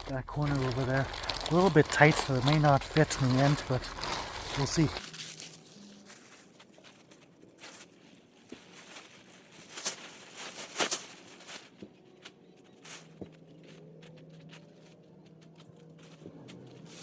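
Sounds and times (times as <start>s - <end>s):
sharp clicks of tent gear: 0.0s - 5.0s
tent gear rustling and scraping: 0.0s - 17.0s.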